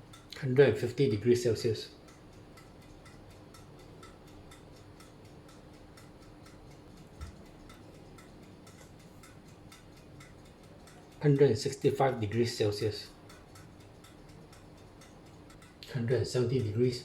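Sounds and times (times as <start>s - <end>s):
fast regular ticking: 0.0s - 17.0s.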